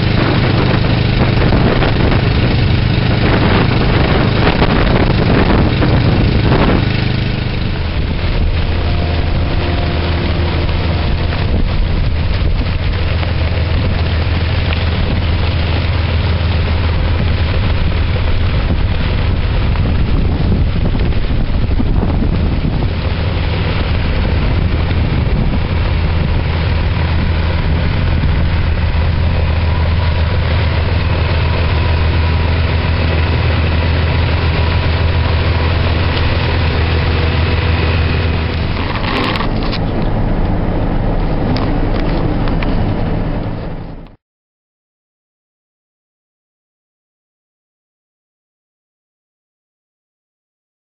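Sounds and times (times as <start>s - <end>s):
constant rushing noise: 0.0s - 44.2s
truck engine droning: 0.0s - 44.2s.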